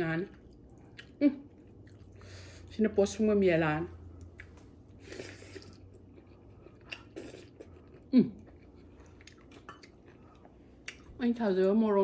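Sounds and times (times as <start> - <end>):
person chewing food: 0.4 - 2.4, 4.2 - 11.2.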